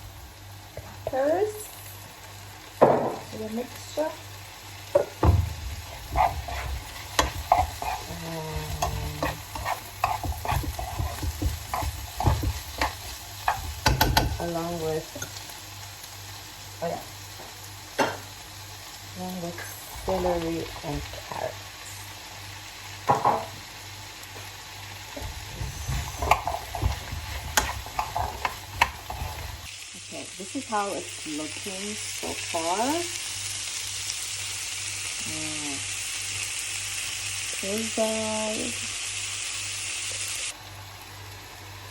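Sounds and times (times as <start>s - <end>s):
vegetables sizzling: 0.0s - 41.9s
spoon scraping and knocking pan: 4.9s - 14.5s, 25.2s - 29.7s.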